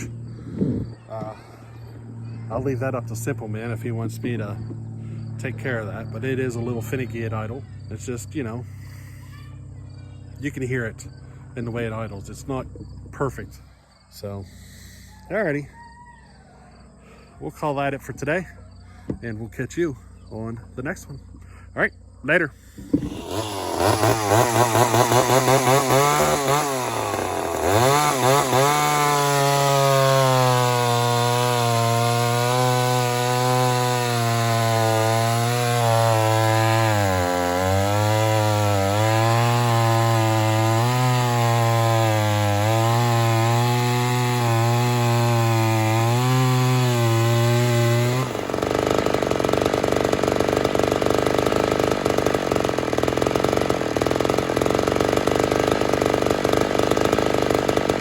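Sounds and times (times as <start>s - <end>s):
chainsaw cutting: 0.0s - 9.3s, 22.6s - 58.0s.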